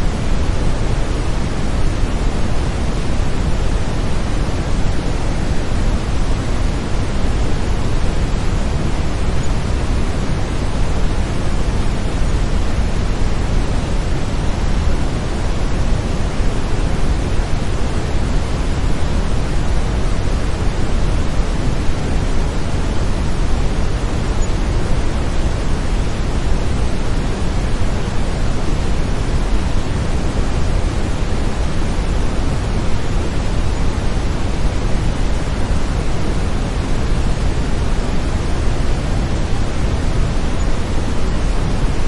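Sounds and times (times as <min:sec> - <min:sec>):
brown noise hiss: 0:00.0 - 0:42.0.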